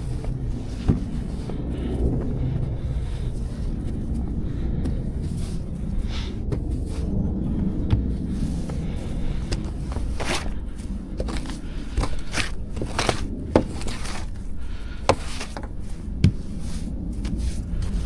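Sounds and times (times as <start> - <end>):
low steady rumble: 0.0 - 18.0
brushing snow off car: 8.2 - 18.0.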